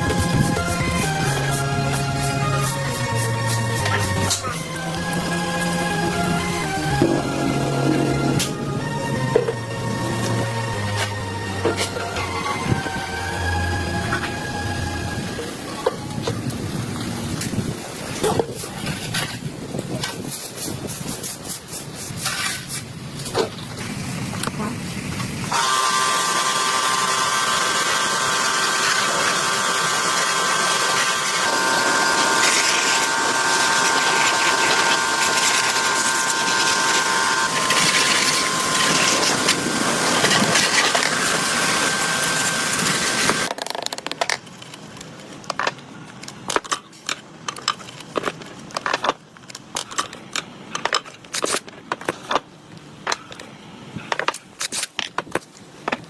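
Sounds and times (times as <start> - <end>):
power tool whining: 0.0 - 16.2, 25.5 - 43.5.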